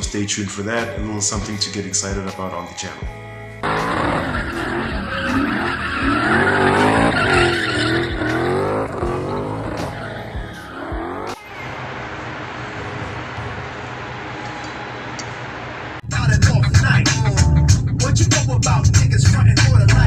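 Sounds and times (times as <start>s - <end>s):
steady beat: 0.8s - 2.4s, 3.0s - 11.4s, 16.1s - 20.0s
tyres squealing: 3.6s - 12.0s
car engine revving: 3.6s - 14.8s, 15.4s - 20.0s.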